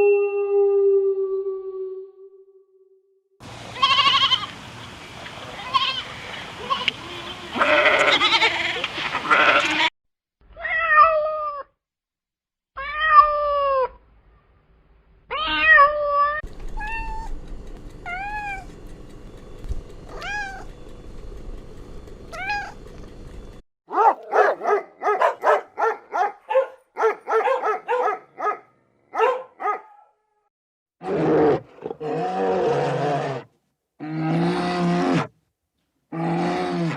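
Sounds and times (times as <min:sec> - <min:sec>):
meow-like animal cries: 0:07.6 - 0:09.9, 0:10.6 - 0:11.7, 0:12.8 - 0:14.0, 0:15.3 - 0:17.3, 0:20.1 - 0:20.7, 0:22.3 - 0:22.8.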